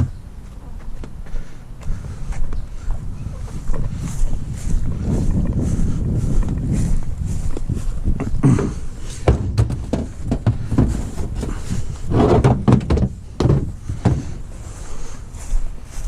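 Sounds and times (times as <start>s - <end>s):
refrigerator scraping: 9.2s - 14.4s
refrigerator knocks and thuds: 9.3s - 14.3s.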